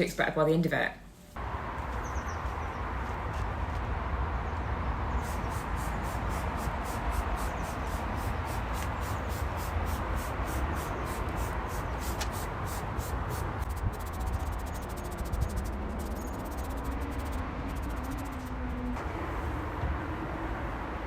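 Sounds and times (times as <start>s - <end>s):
pressure washer spraying: 5.2s - 18.4s
fast regular ticking: 13.6s - 18.5s.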